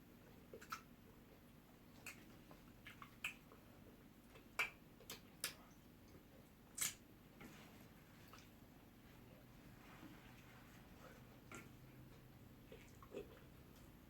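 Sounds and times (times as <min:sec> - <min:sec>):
wet mouth smacks of eating: 0:00.5 - 0:00.9, 0:02.0 - 0:03.6, 0:04.3 - 0:06.2, 0:06.8 - 0:07.0.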